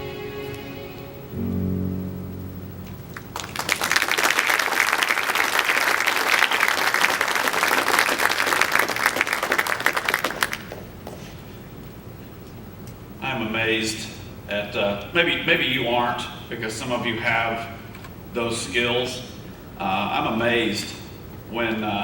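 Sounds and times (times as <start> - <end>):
low chord ringing: 0.0 - 4.4
congregation applauding: 2.9 - 11.4.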